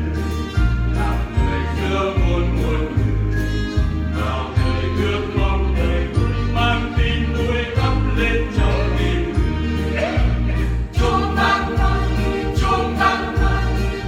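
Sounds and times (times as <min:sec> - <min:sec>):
choir singing a hymn: 0:07.8 - 0:14.0.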